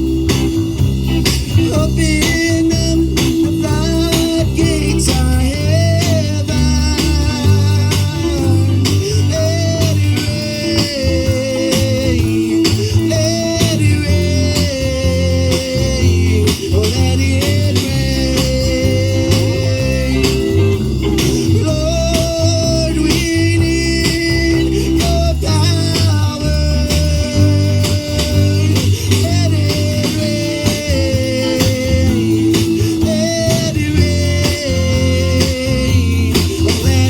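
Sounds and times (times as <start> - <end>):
bass: 0.0 - 37.0
guitar: 0.0 - 37.0.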